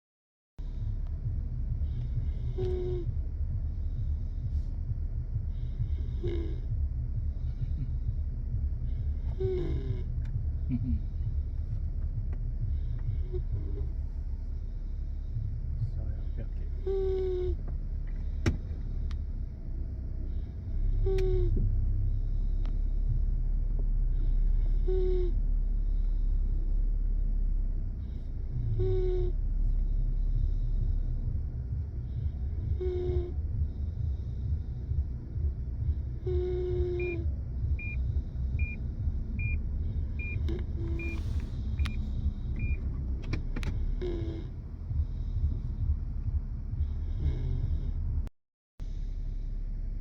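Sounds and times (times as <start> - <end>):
pet snoring low rumble: 0.6 - 50.0
pet snoring whistle: 2.4 - 3.1, 5.9 - 6.6, 9.3 - 10.1, 16.8 - 17.6, 20.9 - 21.6, 24.6 - 25.4, 28.0 - 29.4, 32.6 - 33.4, 36.2 - 38.8, 39.4 - 42.8, 44.0 - 44.5
high whistle on breath: 36.4 - 37.2, 40.2 - 42.8.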